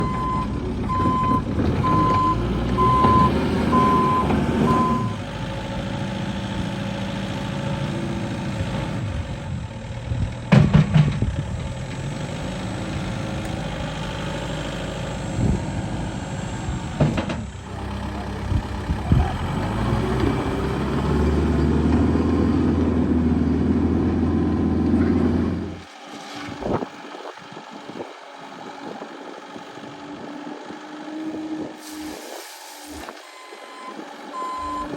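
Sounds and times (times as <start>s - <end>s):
reversing alarm beeping: 0.0s - 5.2s, 33.3s - 34.9s
diesel engine running: 0.0s - 34.9s.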